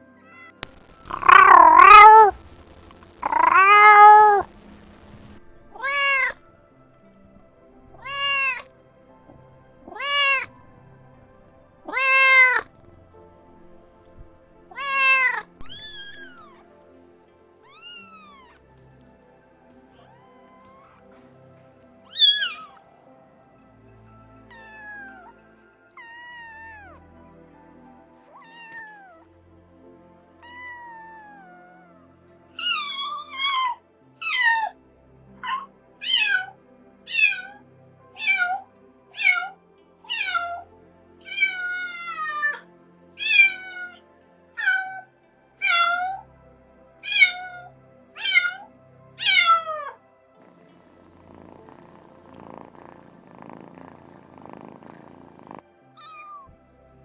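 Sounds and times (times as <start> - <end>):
cat meowing: 0.6 - 6.4, 7.9 - 8.6, 9.9 - 10.7, 11.9 - 12.8, 13.6 - 16.6, 17.7 - 18.6, 22.1 - 22.8, 24.5 - 25.3, 28.4 - 29.2, 32.6 - 34.8, 35.4 - 37.6, 38.2 - 38.6, 39.2 - 40.6, 41.2 - 42.6, 43.2 - 44.0, 44.6 - 46.2, 47.0 - 50.0, 51.4 - 56.6.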